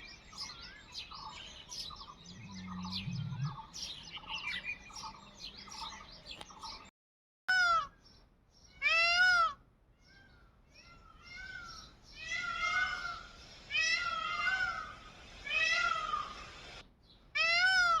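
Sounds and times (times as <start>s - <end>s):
faint bird chirps: 0.0s - 6.9s.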